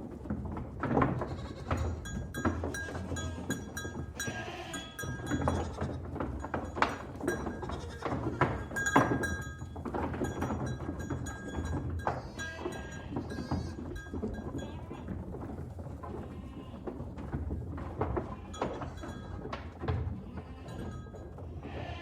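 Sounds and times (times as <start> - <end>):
hooves clattering: 0.0 - 22.0
goats bleating: 1.2 - 2.1, 2.7 - 6.1, 7.4 - 8.7, 12.1 - 15.2, 16.2 - 16.9, 20.2 - 22.0.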